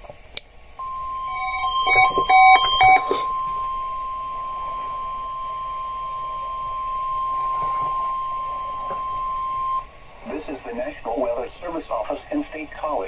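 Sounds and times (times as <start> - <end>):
steady high warning tone: 0.7 - 13.0
short beeps at several pitches: 0.8 - 9.9.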